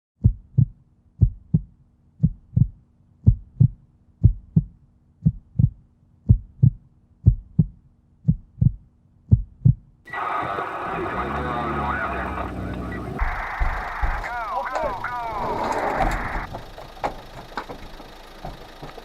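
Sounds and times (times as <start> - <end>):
heartbeat thumps: 0.2 - 9.9, 13.2 - 14.9
faint steady hum: 10.1 - 19.0.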